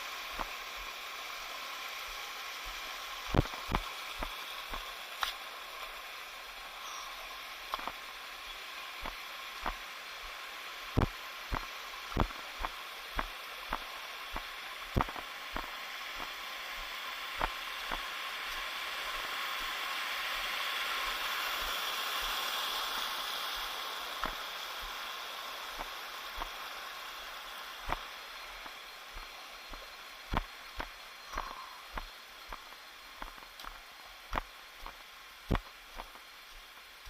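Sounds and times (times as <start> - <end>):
running water hiss: 0.0 - 37.0
footsteps on trail: 2.6 - 6.0, 7.7 - 8.1, 9.0 - 10.4, 11.0 - 19.8, 23.5 - 25.1, 25.7 - 37.0.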